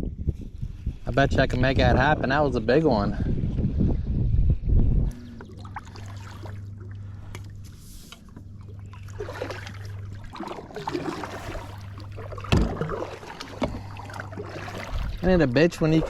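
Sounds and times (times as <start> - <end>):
steady low hum: 0.0 - 16.0
water trickling and splashing: 5.1 - 16.0.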